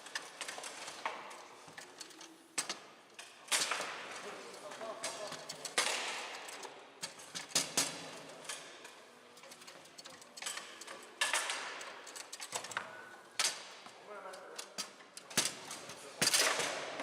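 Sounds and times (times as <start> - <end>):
foosball rods clacking: 5.0 - 13.8.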